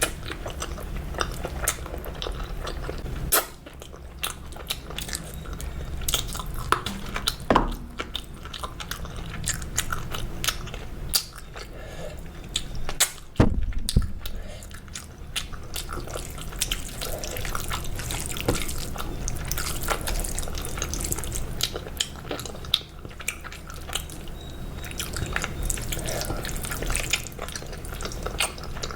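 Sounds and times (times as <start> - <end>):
steady low hum: 5.1 - 21.2
heavy thump: 6.8 - 8.6.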